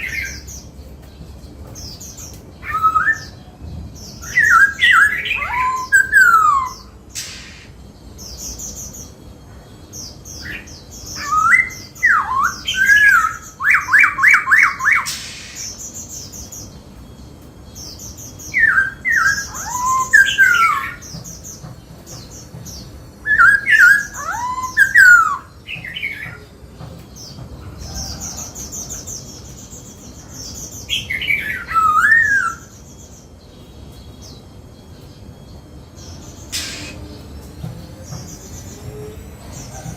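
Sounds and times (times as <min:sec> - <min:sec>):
high chattering bird notes: 0:00.0 - 0:39.9
bird singing whistled phrases: 0:02.6 - 0:03.4, 0:04.2 - 0:07.8, 0:10.4 - 0:15.6, 0:18.5 - 0:21.0, 0:23.2 - 0:26.4, 0:31.0 - 0:32.7.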